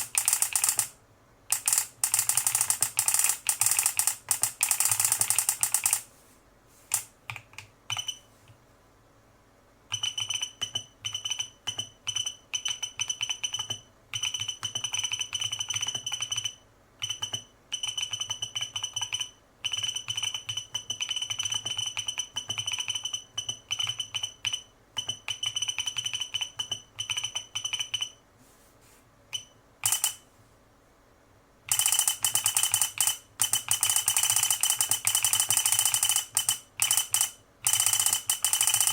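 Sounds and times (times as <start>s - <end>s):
high keyboard beeps: 7.9s - 8.3s, 29.3s - 30.2s.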